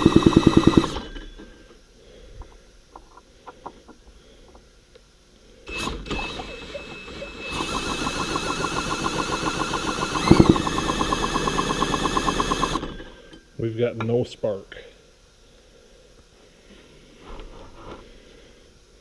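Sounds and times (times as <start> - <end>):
chainsaw engine cranking: 0.0 - 1.2, 5.8 - 13.2.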